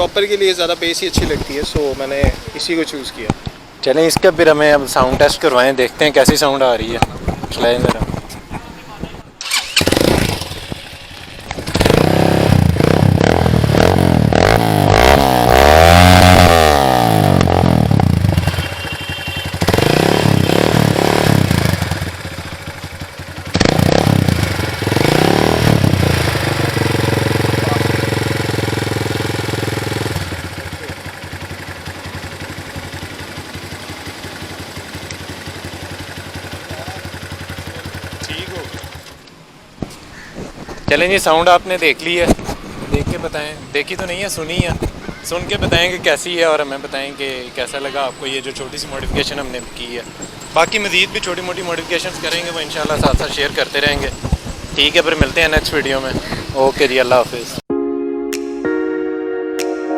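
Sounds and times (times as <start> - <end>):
motorcycle engine revving and idling: 9.4 - 39.3, 47.7 - 57.4.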